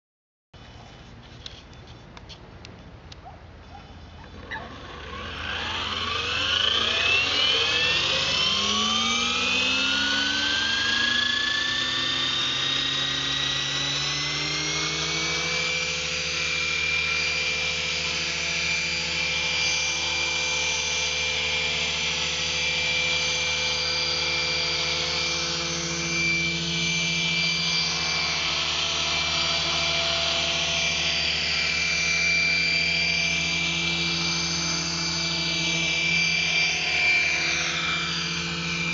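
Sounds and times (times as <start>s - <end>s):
model helicopter motor whine: 4.1s - 38.9s.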